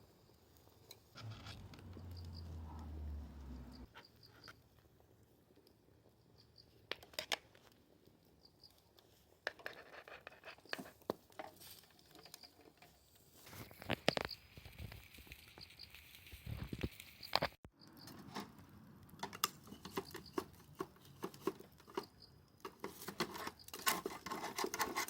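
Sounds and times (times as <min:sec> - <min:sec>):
rustling and crinkling: 0:08.8 - 0:25.0.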